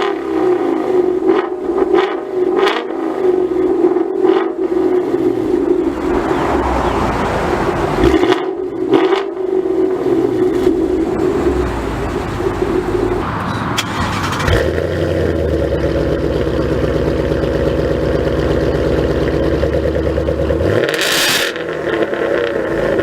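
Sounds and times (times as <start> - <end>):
car engine running: 0.0 - 23.0
rush of noise: 4.6 - 15.4.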